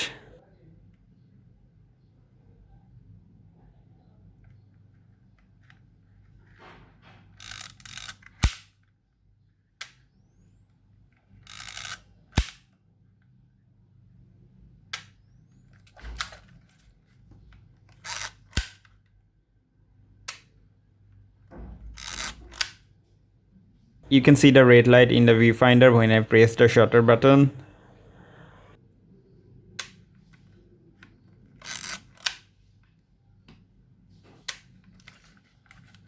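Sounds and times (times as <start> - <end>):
film being wound on: 7.4 - 8.6, 11.3 - 12.5, 17.9 - 18.8, 22.0 - 22.7, 31.6 - 32.4.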